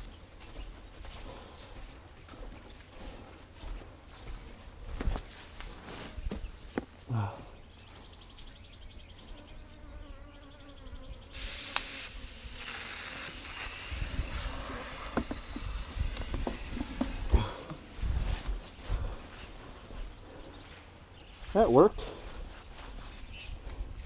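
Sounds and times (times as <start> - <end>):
bees buzzing: 9.1 - 17.9
aerosol can spraying hiss: 11.3 - 17.4.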